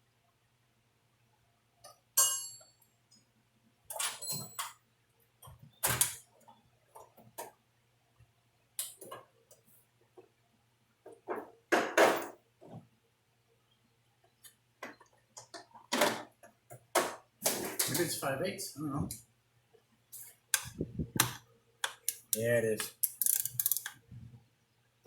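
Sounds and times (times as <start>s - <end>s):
metal clicks and clinks: 22.0s - 24.0s
scraping on chainsaw chain: 23.0s - 23.9s.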